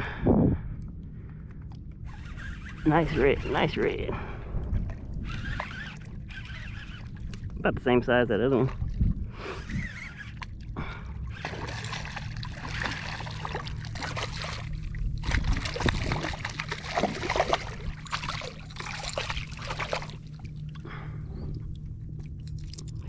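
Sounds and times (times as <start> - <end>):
water splashing and trickling: 9.9 - 20.9, 21.6 - 23.0.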